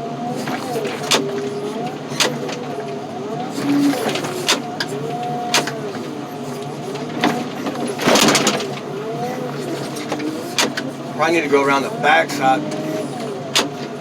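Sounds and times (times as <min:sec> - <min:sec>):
heavy machine engine whining: 0:00.0 - 0:14.0
loud crunching crash: 0:00.3 - 0:11.1.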